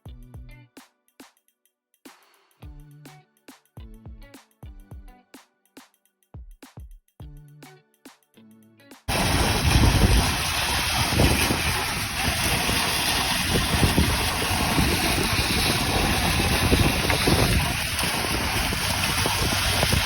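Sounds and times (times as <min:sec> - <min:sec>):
wind buffeting microphone: 0:09.1 - 0:20.0.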